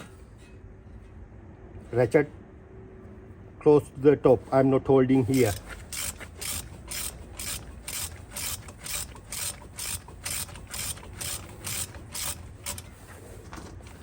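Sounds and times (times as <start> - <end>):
ratchet clicking: 5.3 - 13.0.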